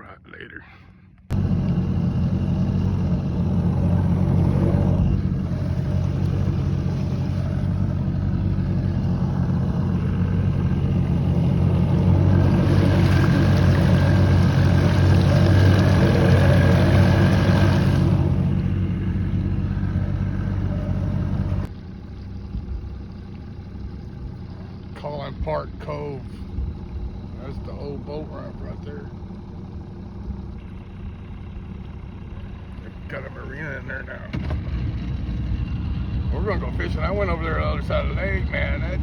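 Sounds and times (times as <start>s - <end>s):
boat motor humming: 0.9s - 39.0s
rushing water: 1.8s - 19.3s.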